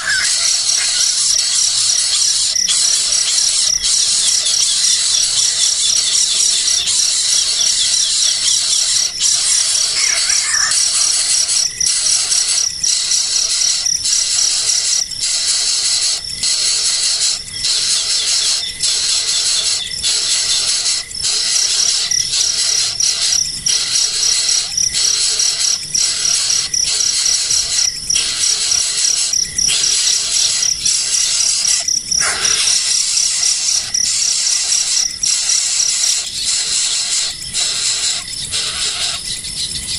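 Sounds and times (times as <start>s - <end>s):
baby birds squealing: 0.0s - 39.9s
insect trill: 0.0s - 39.9s.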